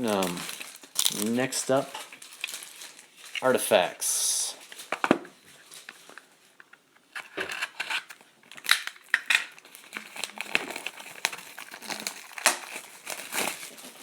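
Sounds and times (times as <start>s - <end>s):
plastic shrink wrap crinkling and tearing: 0.0s - 14.0s.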